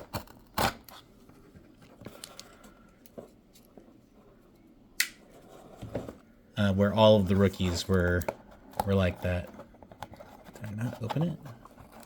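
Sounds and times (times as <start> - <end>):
paper and packaging rustling: 6.8 - 12.0.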